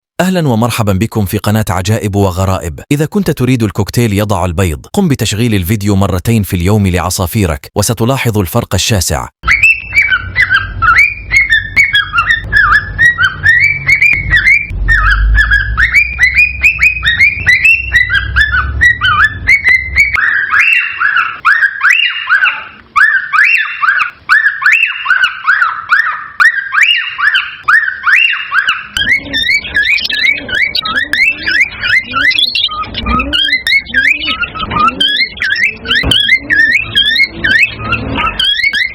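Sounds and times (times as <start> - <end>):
cockatiel whistling: 9.4 - 38.9
low rumble: 14.2 - 15.9.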